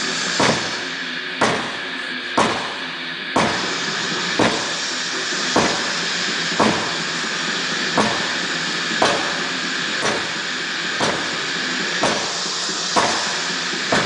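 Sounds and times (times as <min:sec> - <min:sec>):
sledgehammer strikes: 0:00.2 - 0:04.8, 0:05.5 - 0:07.1, 0:08.0 - 0:14.0.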